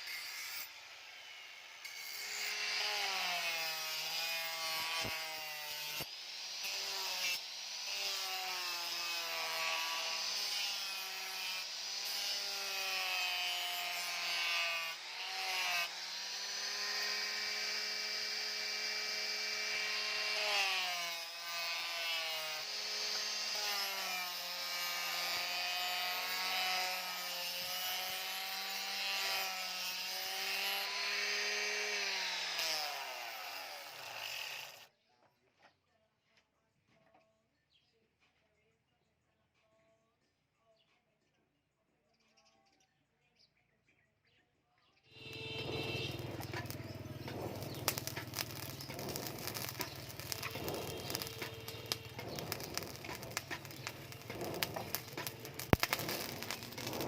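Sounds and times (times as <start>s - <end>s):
electric grinder on steel: 0.0s - 34.9s, 45.2s - 57.0s.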